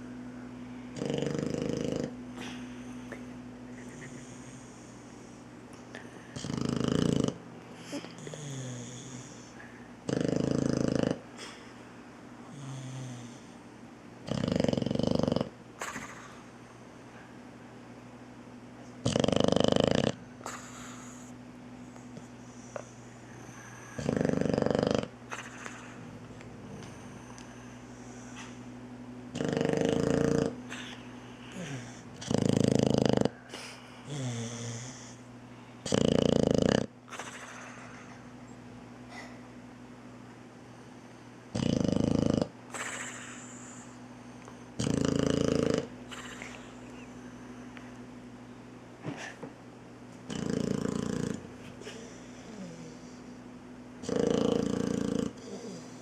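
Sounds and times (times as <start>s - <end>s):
puppy snoring loudly: 0.9s - 2.6s, 6.3s - 11.6s, 12.5s - 13.6s, 14.2s - 16.4s, 19.0s - 21.3s, 22.2s - 28.6s, 29.3s - 38.2s, 41.5s - 44.0s, 44.8s - 46.8s, 50.3s - 53.4s, 54.0s - 56.0s
quiet breathing: 2.2s - 6.6s, 20.4s - 24.6s, 25.3s - 29.1s, 30.5s - 32.2s, 42.8s - 44.8s, 51.5s - 53.5s, 55.3s - 56.0s.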